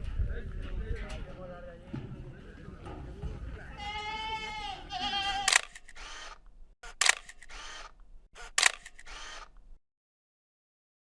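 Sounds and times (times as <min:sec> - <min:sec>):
goat bleating: 0:03.6 - 0:05.7
sharp clicks: 0:05.5 - 0:09.7.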